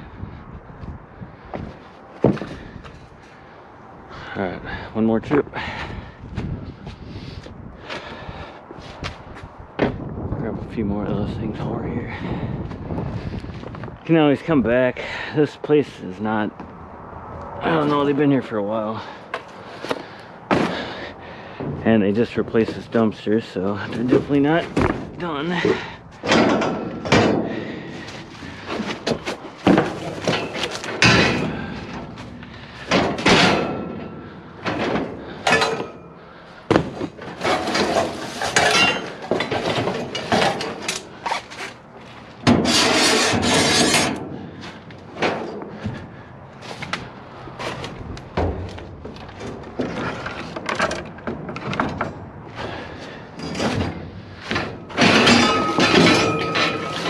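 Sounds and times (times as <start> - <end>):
scrap metal clanking: 18.8 - 47.0, 47.6 - 57.0.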